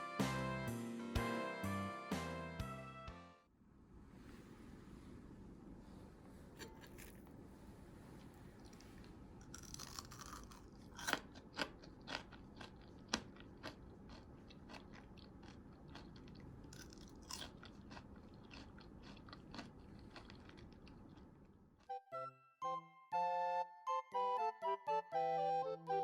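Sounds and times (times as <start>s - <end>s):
chewing crispy fries: 8.6s - 21.6s.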